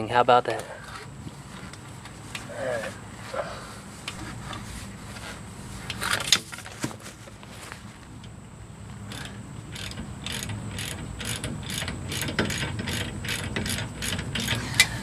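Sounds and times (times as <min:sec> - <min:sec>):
ratchet clicking: 0:09.1 - 0:15.0.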